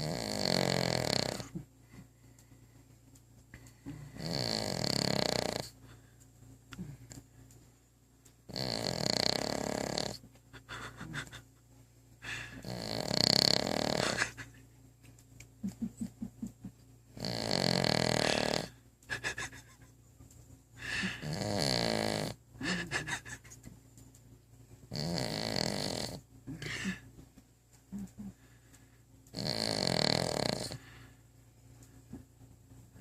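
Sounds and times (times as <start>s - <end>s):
dog snoring: 0.0s - 1.6s, 3.9s - 5.8s, 8.5s - 10.2s, 12.5s - 14.4s, 17.1s - 18.8s, 21.0s - 22.4s, 24.9s - 26.2s, 29.3s - 30.9s.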